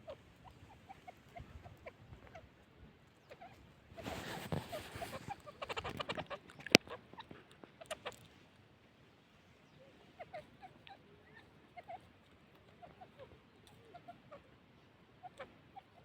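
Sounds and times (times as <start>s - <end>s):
bird clucking: 0.0s - 8.4s, 9.6s - 16.0s
rustling: 3.3s - 8.4s.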